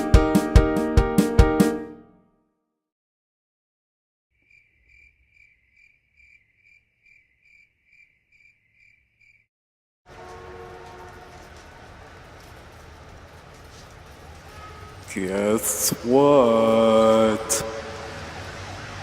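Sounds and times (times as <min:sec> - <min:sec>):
high cricket-like chirping: 0:04.4 - 0:09.5.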